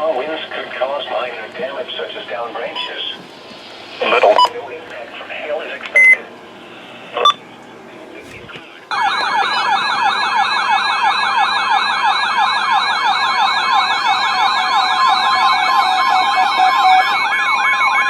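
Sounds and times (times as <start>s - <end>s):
weather radio alert warble: 4.0s - 5.2s, 8.9s - 10.8s.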